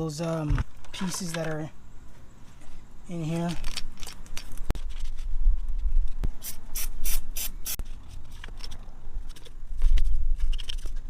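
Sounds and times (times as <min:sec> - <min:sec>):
short high hissing strokes: 0:06.4 - 0:07.8.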